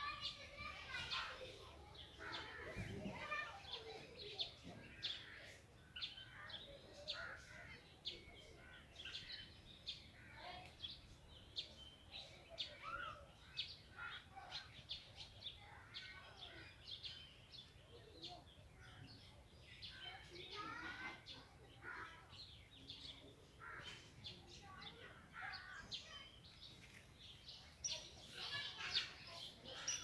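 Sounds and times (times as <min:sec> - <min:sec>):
small birds chirping: 0:00.0 - 0:30.0.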